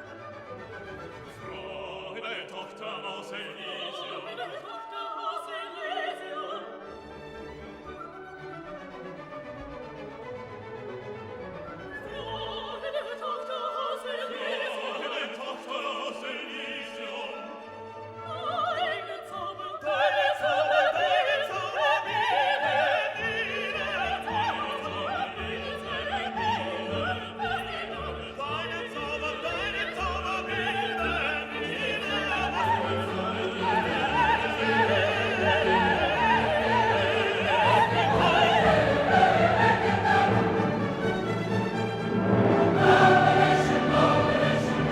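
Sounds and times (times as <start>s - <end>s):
orchestral music: 0.0s - 44.9s
operatic singing: 0.6s - 7.8s, 11.7s - 44.9s.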